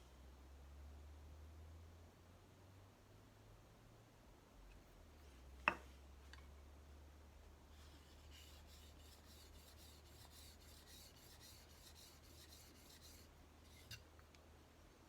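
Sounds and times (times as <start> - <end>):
chisel scraping on oil stone: 7.8 - 14.1.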